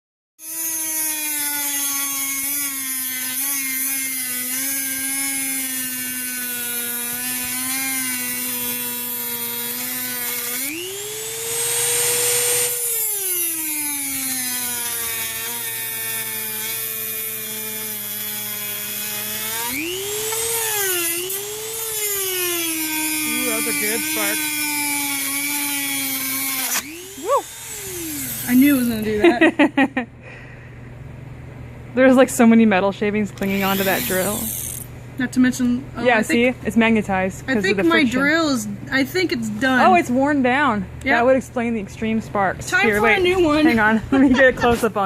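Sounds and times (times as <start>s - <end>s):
rotary tool grinding metal: 0.4s - 29.2s, 33.4s - 34.9s.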